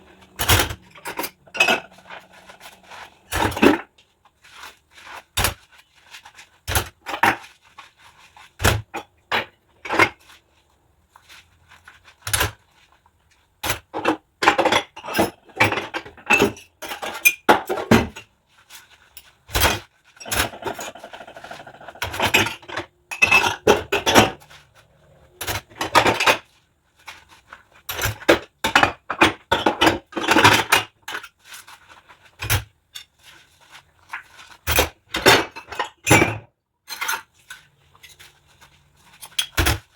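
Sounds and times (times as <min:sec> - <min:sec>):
dishes and cutlery clinking: 0:00.0 - 0:03.9, 0:19.6 - 0:26.4, 0:39.1 - 0:39.9
scrubbing dishes: 0:00.0 - 0:05.6, 0:19.4 - 0:30.9.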